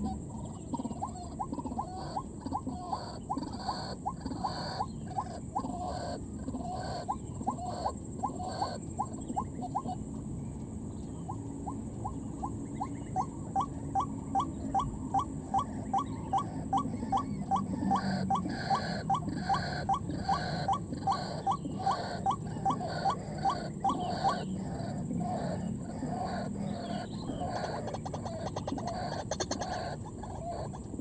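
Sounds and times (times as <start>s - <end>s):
waterhen calling: 0.0s - 10.0s, 11.3s - 30.8s.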